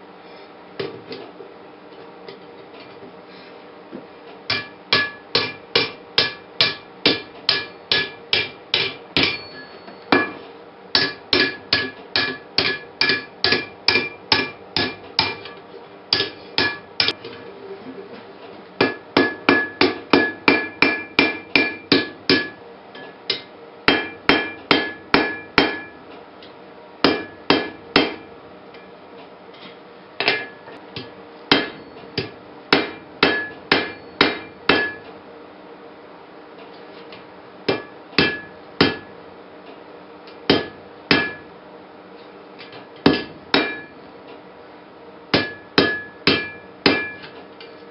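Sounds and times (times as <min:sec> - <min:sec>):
hammer striking steel on anvil: 0:04.5 - 0:17.2, 0:18.8 - 0:26.0, 0:27.0 - 0:28.3, 0:30.2 - 0:35.1, 0:37.7 - 0:39.1, 0:40.5 - 0:41.5, 0:43.0 - 0:43.9, 0:45.3 - 0:47.4
metallic ring of anvil: 0:09.2 - 0:10.4, 0:45.5 - 0:47.2.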